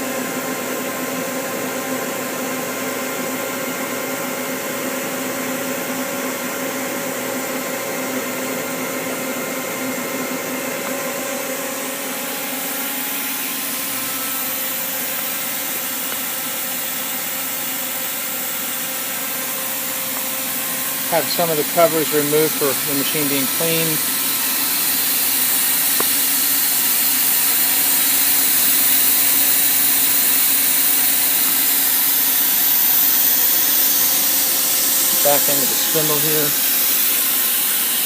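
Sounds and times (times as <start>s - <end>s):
machinery humming: 19.2s - 30.4s, 33.8s - 37.8s.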